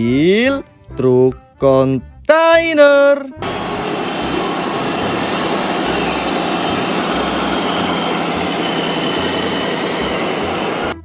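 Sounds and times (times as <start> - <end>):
steady rushing noise: 3.4 - 11.0.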